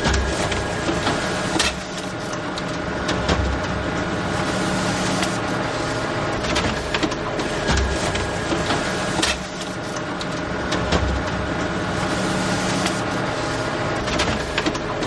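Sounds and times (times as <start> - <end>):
paper mechanism clicks and thumps: 0.0 - 3.8, 6.4 - 11.7, 14.0 - 15.0
photocopier running: 0.0 - 15.0.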